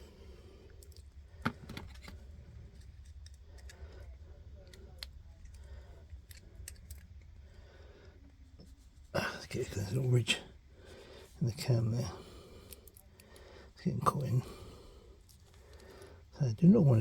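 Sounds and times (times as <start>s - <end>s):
low steady hum: 0.0s - 17.0s
lock parts clicking and scraping: 0.8s - 7.4s.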